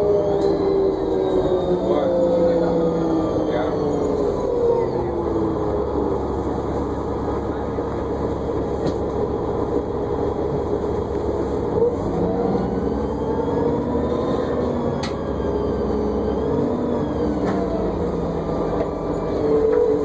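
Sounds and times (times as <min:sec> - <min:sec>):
bus engine and road noise: 0:00.0 - 0:20.0
rising whine: 0:00.0 - 0:20.0.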